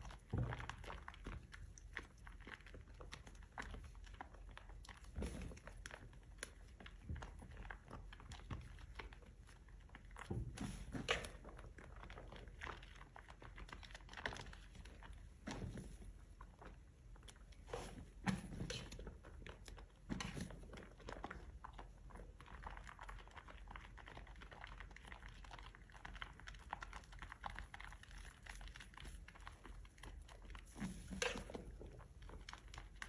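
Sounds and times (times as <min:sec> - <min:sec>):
wet soap squishing: 0:00.0 - 0:33.0.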